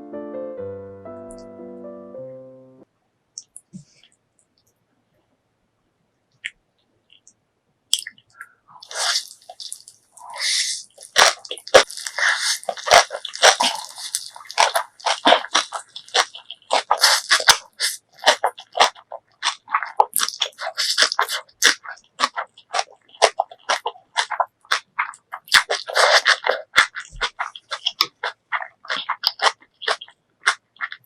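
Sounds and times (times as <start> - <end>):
wet crunching and chewing: 7.9 - 31.0.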